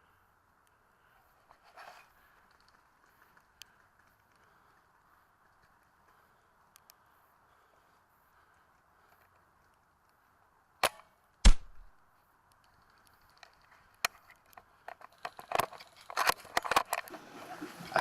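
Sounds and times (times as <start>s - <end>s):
small clicks and rustles: 0.5s - 10.6s, 12.0s - 18.0s
airsoft rifle shot crack: 10.8s - 11.9s.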